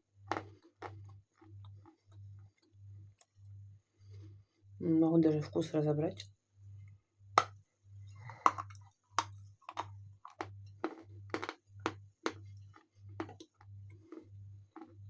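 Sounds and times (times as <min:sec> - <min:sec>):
chewing crunchy chalk: 0:00.3 - 0:02.6, 0:08.2 - 0:15.0.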